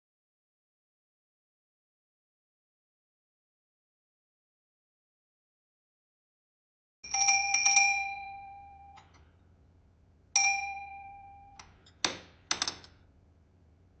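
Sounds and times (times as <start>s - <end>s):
door bell jingling: 7.1s - 9.1s, 10.4s - 11.6s.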